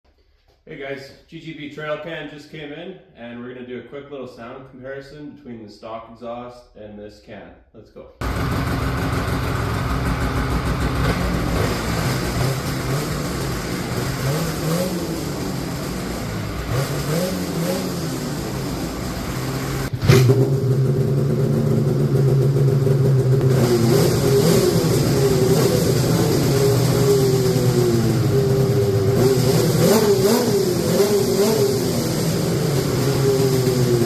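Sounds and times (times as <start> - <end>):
snowmobile engine idling: 8.2 - 34.0.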